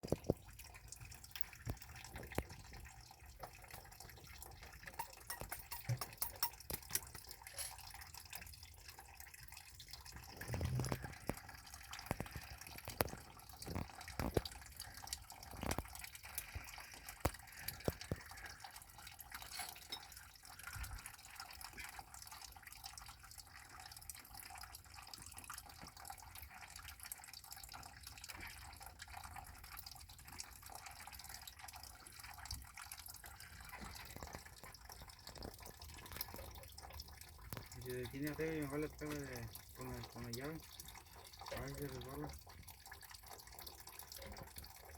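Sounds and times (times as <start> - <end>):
hand tools tapping on metal: 4.6 - 7.8.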